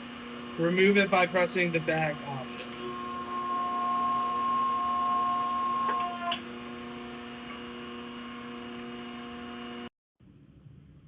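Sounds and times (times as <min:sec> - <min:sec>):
steady electrical hum: 0:00.0 - 0:07.9
hydraulic crimper whine: 0:00.0 - 0:09.9.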